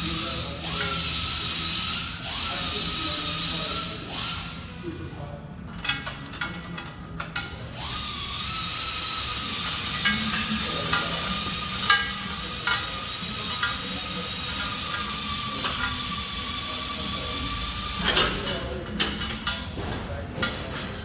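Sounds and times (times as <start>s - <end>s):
compressed air hiss with whine: 0.0s - 4.8s, 7.8s - 18.2s.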